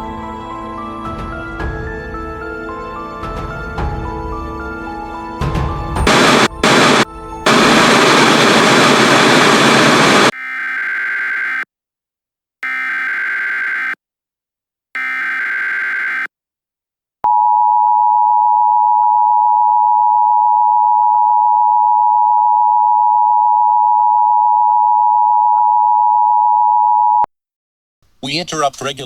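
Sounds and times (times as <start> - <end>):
buzzing digital data tones: 12.6 - 14.0, 15.0 - 16.3.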